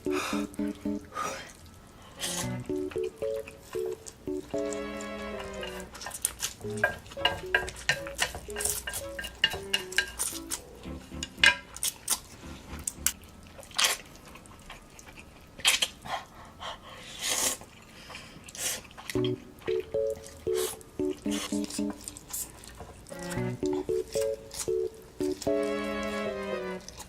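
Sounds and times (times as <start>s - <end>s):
quiet background music: 0.0s - 13.5s, 19.2s - 27.0s.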